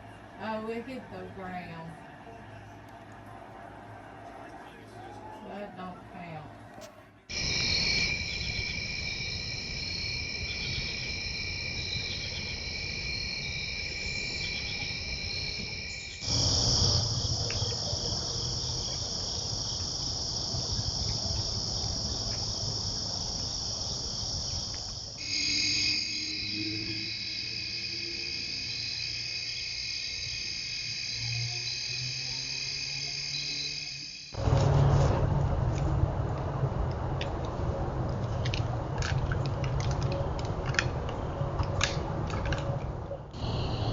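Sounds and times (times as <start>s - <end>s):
crickets chirring: 7.3s - 34.5s, 43.4s - 43.9s.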